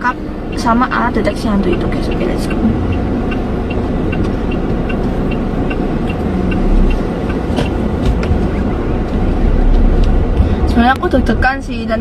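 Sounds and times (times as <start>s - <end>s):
faint regular ticking: 0.0s - 8.0s
car engine and road rumble: 0.0s - 12.0s.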